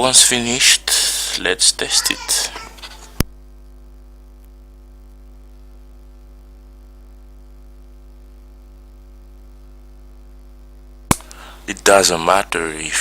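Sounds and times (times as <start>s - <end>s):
electrical mains hum: 0.0s - 13.0s.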